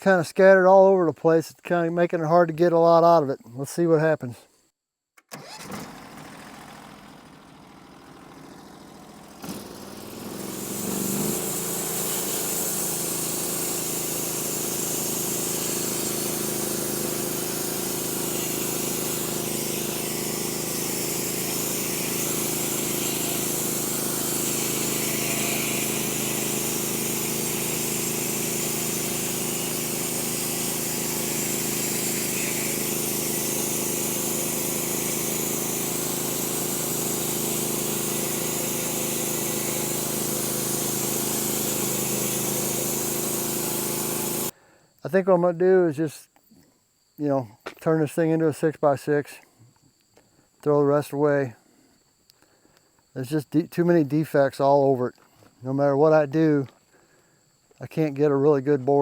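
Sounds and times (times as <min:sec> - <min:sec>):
sawmill engine running: 0:05.3 - 0:44.6
band blade cutting wood: 0:09.3 - 0:44.5.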